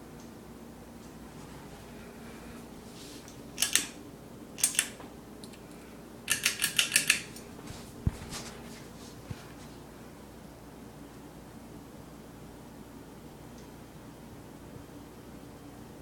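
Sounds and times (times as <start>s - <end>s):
sharp clicks: 3.3s - 4.0s, 4.6s - 7.4s.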